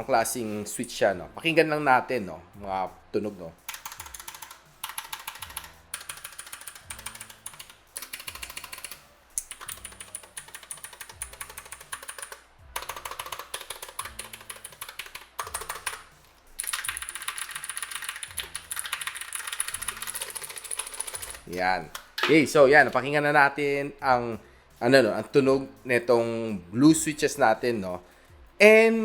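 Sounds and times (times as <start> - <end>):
fast typing on mechanical keyboard: 3.7 - 22.3.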